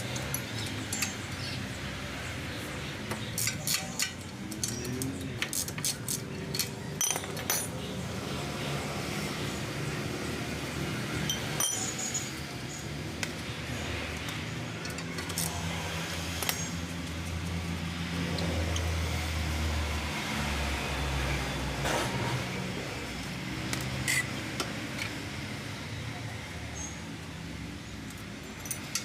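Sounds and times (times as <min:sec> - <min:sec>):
metal tools clinking on metal: 0:00.0 - 0:01.6, 0:03.1 - 0:08.0, 0:11.2 - 0:12.8, 0:28.1 - 0:29.0.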